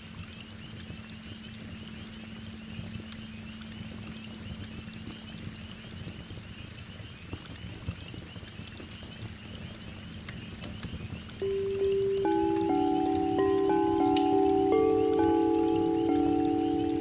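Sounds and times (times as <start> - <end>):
fireplace crackles: 11.4 - 17.0
singing bowl ringing: 11.4 - 17.0
steady rain: 11.4 - 17.0.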